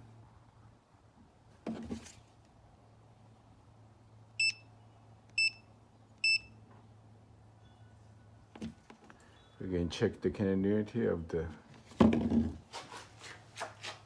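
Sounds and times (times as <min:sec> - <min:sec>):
multimeter beeps: 0:04.4 - 0:04.7, 0:05.4 - 0:06.6.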